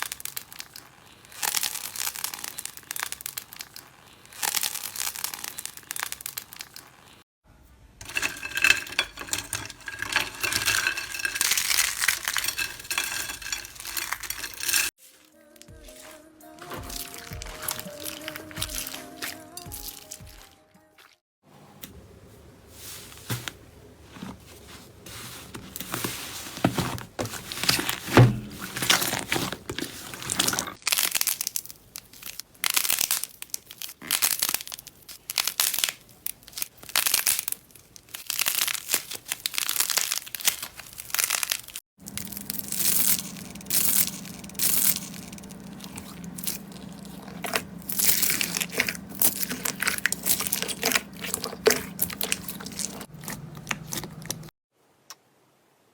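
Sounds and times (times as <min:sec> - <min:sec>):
crunchy slime being squeezed: 0:00.0 - 0:07.2, 0:30.7 - 0:54.5
low steady hum: 0:42.0 - 0:54.5.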